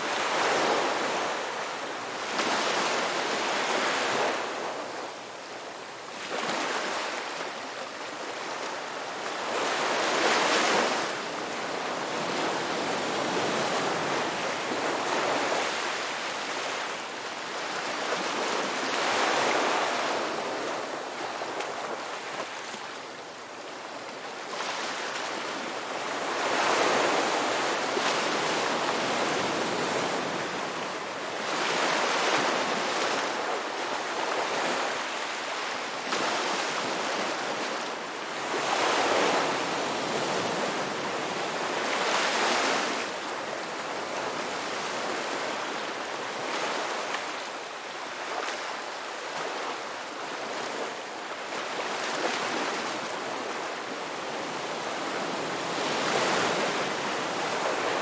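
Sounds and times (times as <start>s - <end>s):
ocean waves breaking on beach: 0.0s - 58.0s.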